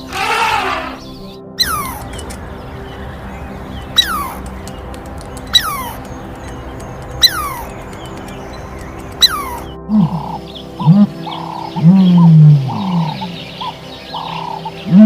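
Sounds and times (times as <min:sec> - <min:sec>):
animal sharp calls: 0:00.0 - 0:02.1, 0:04.0 - 0:04.4, 0:05.5 - 0:06.0, 0:07.2 - 0:07.7, 0:09.2 - 0:10.4
steady low drone: 0:00.0 - 0:15.0.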